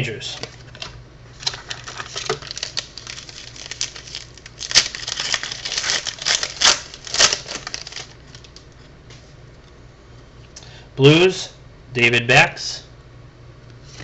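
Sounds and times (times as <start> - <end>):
plastic wrapper crinkling and tearing: 0.7 - 8.7.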